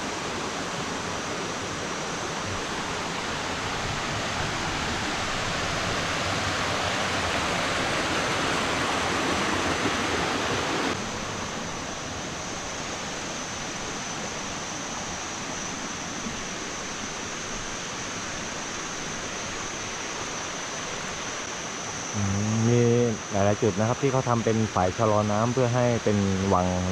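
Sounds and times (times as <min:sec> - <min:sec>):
water rushing over waterfall: 0:00.0 - 0:11.2
thin steady high tone: 0:12.6 - 0:26.9.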